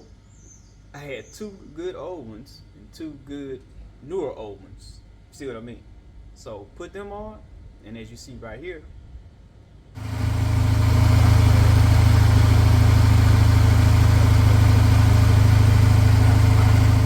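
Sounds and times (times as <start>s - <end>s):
car engine running steadily: 10.0s - 17.0s.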